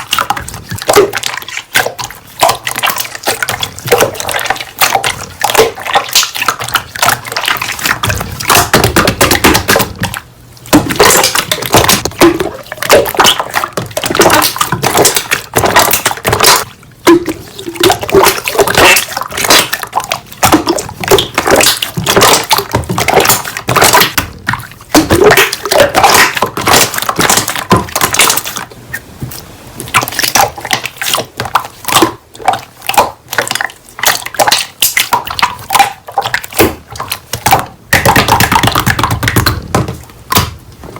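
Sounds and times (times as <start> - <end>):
slime squelching: 0.0 - 40.9.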